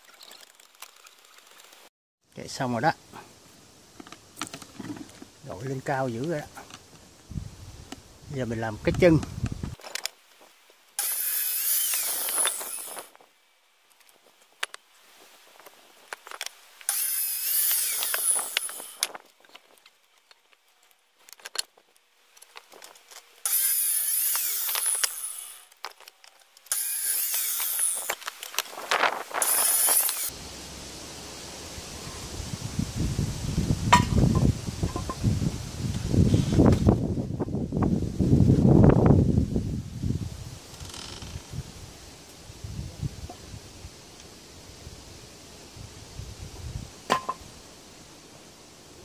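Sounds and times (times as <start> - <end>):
power tool running: 11.0 - 13.1, 23.4 - 25.6, 26.7 - 28.2, 29.4 - 30.3.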